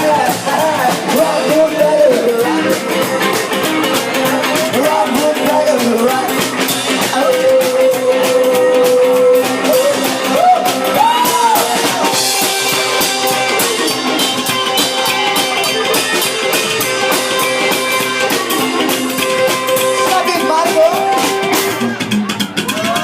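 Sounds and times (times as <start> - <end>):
drum kit beat: 0.0 - 23.0
lead guitar bending notes: 11.6 - 22.6.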